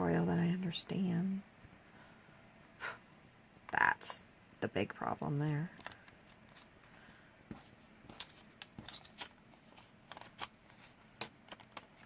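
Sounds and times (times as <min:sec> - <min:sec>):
paper rustling and shuffling: 0:05.7 - 0:12.0.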